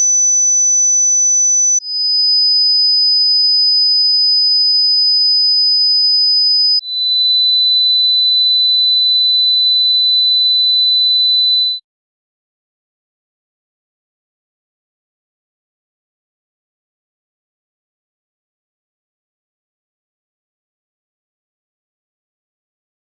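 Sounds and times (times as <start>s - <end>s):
high-pitched sine test tones: 0.0s - 2.1s, 6.8s - 8.4s, 11.2s - 11.8s.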